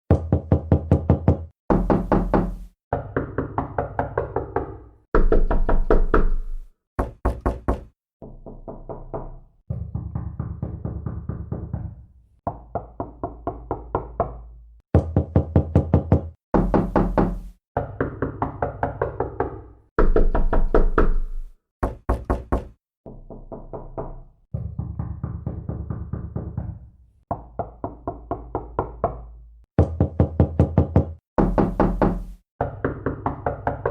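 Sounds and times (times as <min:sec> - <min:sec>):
quick knocks on door: 0:07.0 - 0:08.0, 0:21.8 - 0:22.8.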